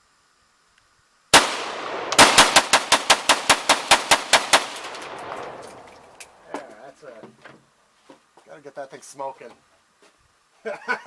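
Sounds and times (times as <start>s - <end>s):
rifle gunshots echoing: 1.4s - 6.5s.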